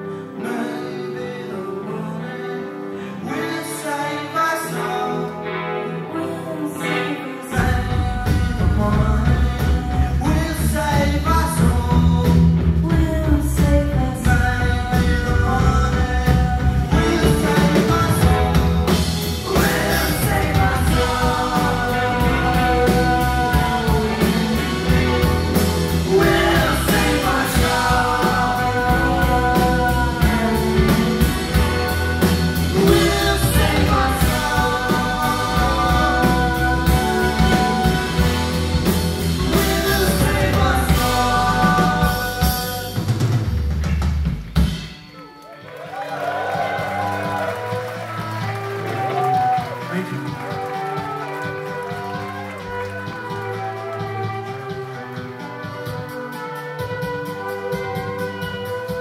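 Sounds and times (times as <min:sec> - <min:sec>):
person singing: 0:00.0 - 0:43.3
live rock band playing: 0:00.0 - 0:59.0.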